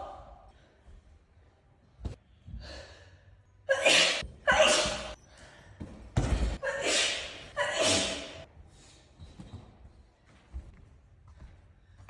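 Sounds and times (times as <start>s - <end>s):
woman sneezing: 3.7s - 5.2s, 6.6s - 8.4s.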